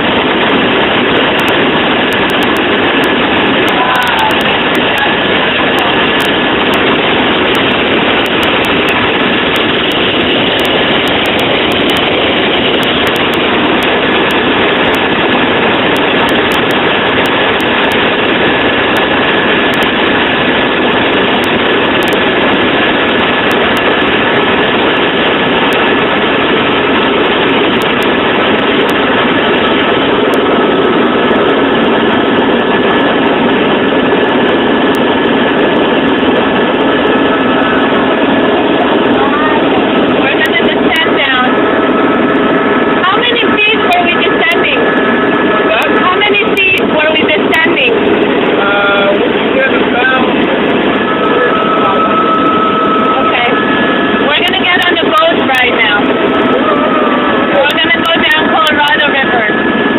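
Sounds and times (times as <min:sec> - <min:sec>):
helicopter engine and rotor: 0:00.0 - 0:59.9
thin high tone: 0:50.9 - 0:59.9.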